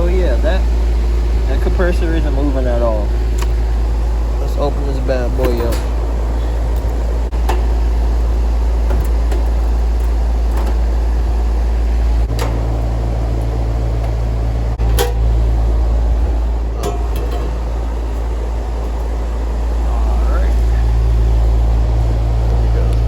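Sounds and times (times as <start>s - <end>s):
air conditioner unit humming: 0.0s - 23.0s
clicks and knocks of metal panel: 5.4s - 6.1s, 12.3s - 12.9s, 14.8s - 15.4s, 16.7s - 17.8s.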